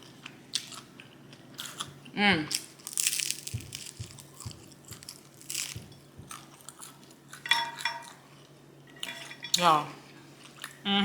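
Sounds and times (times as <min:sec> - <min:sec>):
chewing food with crunching: 0:00.0 - 0:07.4.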